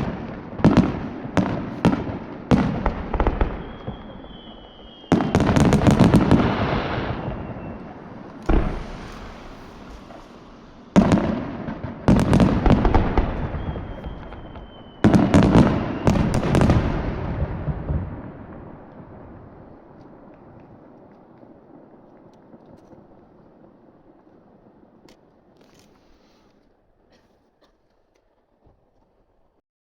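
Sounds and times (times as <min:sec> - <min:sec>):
firework booms: 0:00.0 - 0:26.5
firework crackles: 0:00.0 - 0:29.6
thin falling whistle: 0:03.5 - 0:05.4, 0:13.2 - 0:16.6
rumble: 0:07.7 - 0:14.3.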